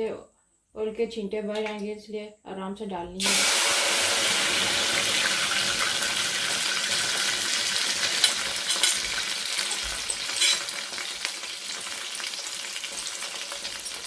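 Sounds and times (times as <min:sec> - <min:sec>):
semolina sizzling in hot oil: 0:03.2 - 0:14.0
spoon clicking against pan: 0:08.1 - 0:09.1.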